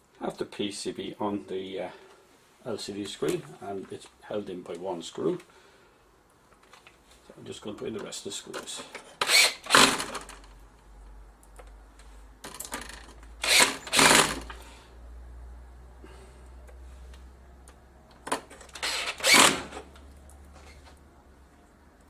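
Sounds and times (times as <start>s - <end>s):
electric screwdriver running: 9.2s - 10.2s, 13.4s - 14.5s, 18.7s - 19.8s.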